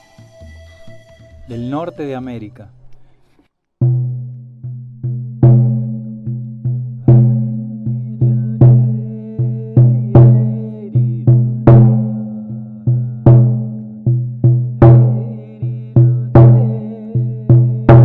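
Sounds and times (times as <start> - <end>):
frame drum booming beats: 3.8 - 18.0.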